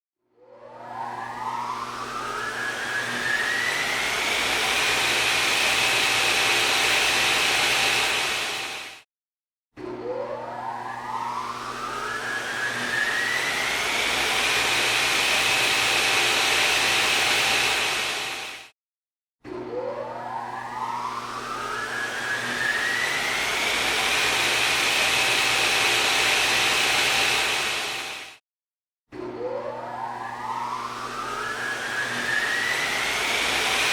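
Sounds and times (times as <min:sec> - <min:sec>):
motor whine spinning up: 0:00.4 - 0:09.0, 0:09.8 - 0:18.7, 0:19.4 - 0:28.4, 0:29.1 - 0:33.9
electric motor whining: 0:03.2 - 0:08.9, 0:12.9 - 0:18.6, 0:31.2 - 0:33.9.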